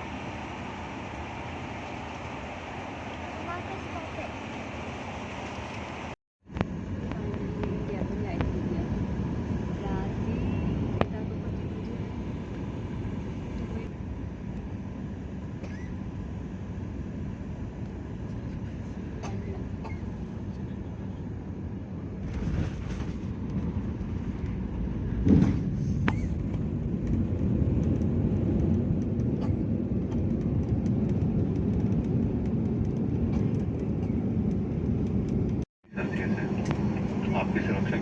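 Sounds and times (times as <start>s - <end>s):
airliner cabin rumble: 0.0s - 38.0s
thump: 25.2s - 26.3s.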